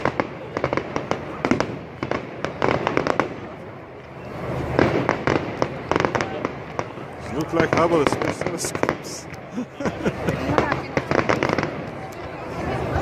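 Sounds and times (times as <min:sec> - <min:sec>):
fireworks bursting and crackling: 0:00.0 - 0:13.0.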